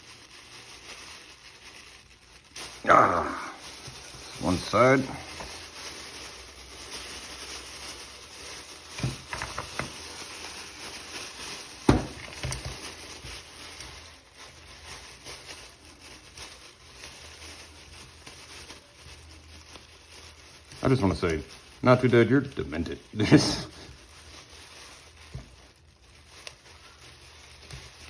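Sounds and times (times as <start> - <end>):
rustling and handling noise: 0.0 - 28.0.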